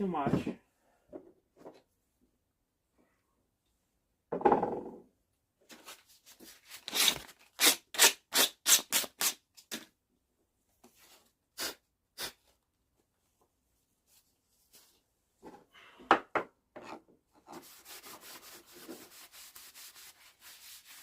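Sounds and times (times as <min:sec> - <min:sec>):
rubbing strokes on wood: 0:17.5 - 0:21.0.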